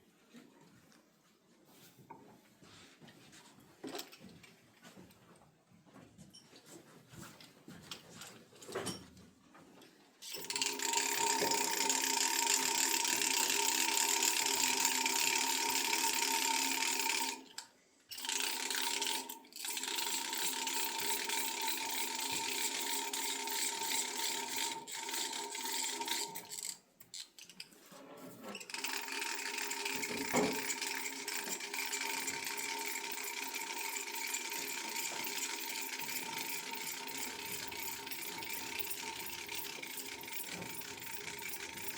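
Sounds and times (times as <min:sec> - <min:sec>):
hand winder ratcheting whir: 0:10.2 - 0:27.7, 0:28.6 - 0:41.9.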